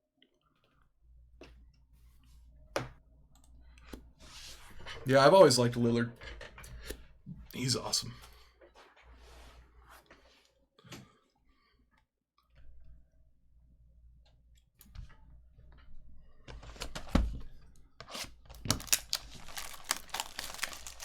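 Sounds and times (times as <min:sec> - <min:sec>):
card wrappers tearing and crinkling: 0:18.1 - 0:21.0.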